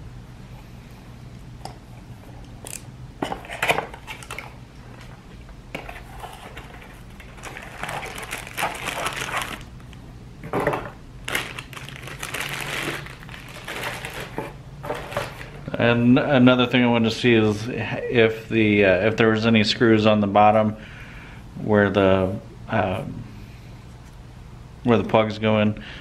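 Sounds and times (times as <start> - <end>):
cardboard packaging rustling: 5.8 - 9.9, 11.2 - 15.7.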